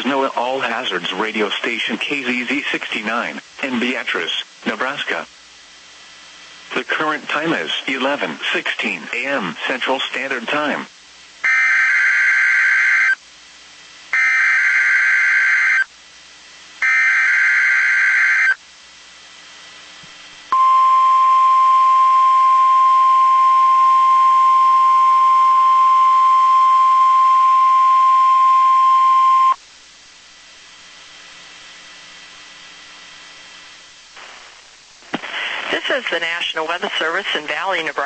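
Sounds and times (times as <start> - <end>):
steady warning alarm tone: 11.4 - 13.2, 14.2 - 15.9, 16.8 - 18.6, 20.5 - 29.6.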